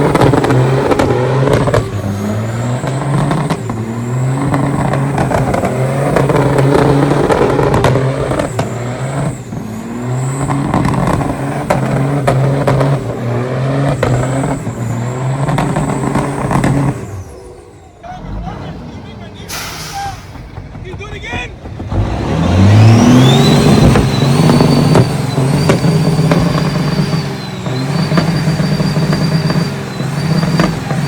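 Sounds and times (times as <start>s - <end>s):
diesel truck engine revving: 0.0s - 31.0s.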